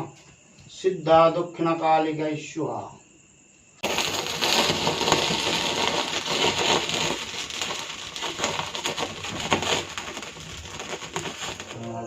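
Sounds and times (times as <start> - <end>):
wood fire crackling: 3.8 - 12.0.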